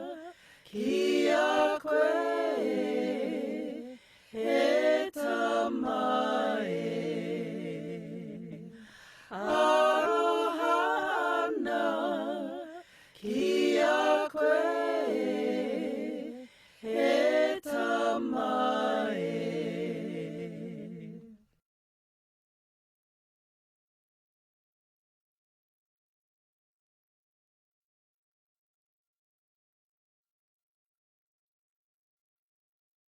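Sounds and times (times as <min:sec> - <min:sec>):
person singing unaccompanied: 0:00.0 - 0:02.9.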